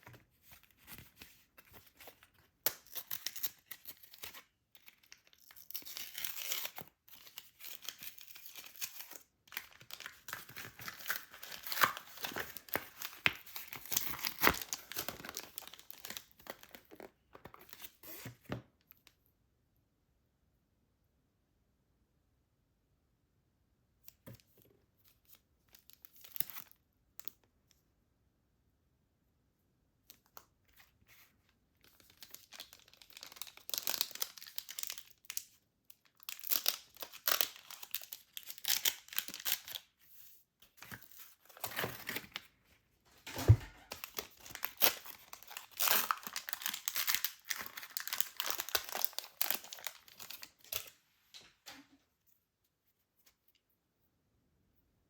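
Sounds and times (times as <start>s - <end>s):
packaging tearing and crinkling: 2.0s - 17.9s, 32.2s - 35.5s, 36.1s - 39.8s, 43.2s - 50.9s
handling noises: 43.1s - 44.1s.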